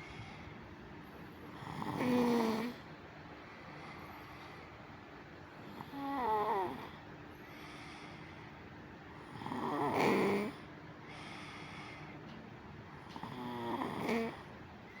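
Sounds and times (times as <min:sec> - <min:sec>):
quiet breathing: 0:00.0 - 0:15.0
person snoring loudly: 0:01.6 - 0:02.8, 0:09.3 - 0:10.6, 0:13.2 - 0:14.4.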